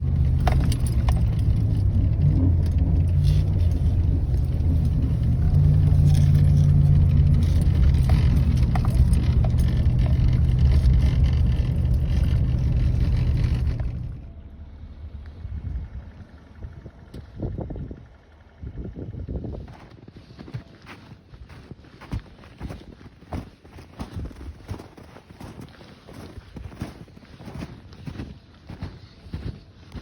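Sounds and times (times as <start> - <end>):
light rattles: 0.0 - 14.3
vehicle engine running: 0.0 - 30.0.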